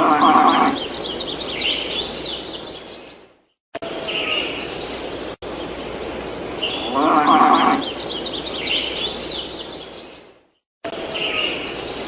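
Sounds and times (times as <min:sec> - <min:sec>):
animal call: 0:00.0 - 0:01.0, 0:06.7 - 0:08.0
birds chirping rapidly: 0:00.0 - 0:12.0.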